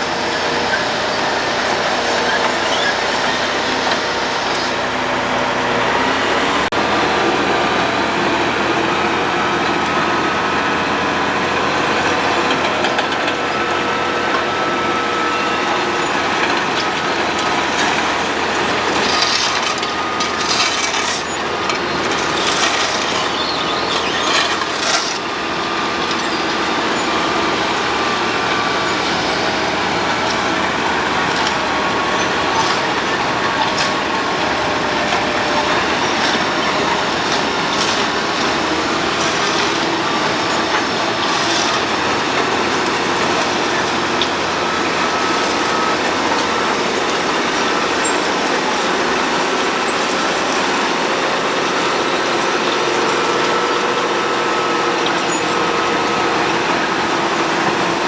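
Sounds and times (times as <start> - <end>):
road planer running: 0.0 - 58.0.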